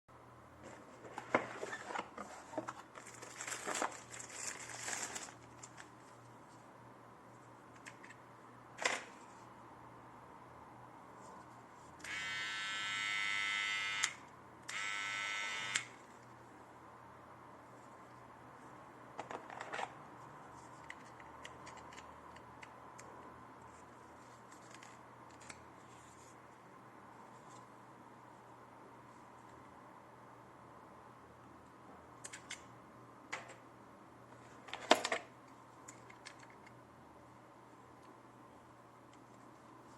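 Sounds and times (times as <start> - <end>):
faint steady hum: 0.1 - 39.9
plastic rustling and clicking: 1.0 - 6.2
plastic clicks and rattles: 35.9 - 36.8.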